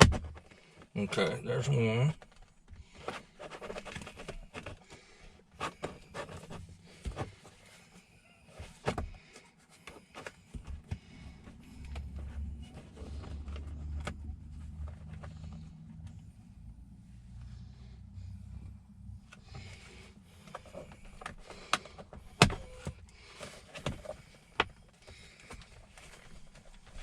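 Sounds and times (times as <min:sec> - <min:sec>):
low steady rumble: 0:10.5 - 0:27.0.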